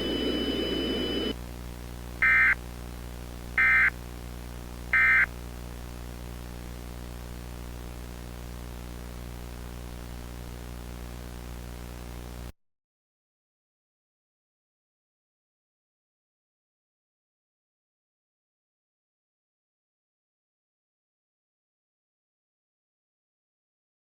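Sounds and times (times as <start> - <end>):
steady low hum: 0.0 - 12.5.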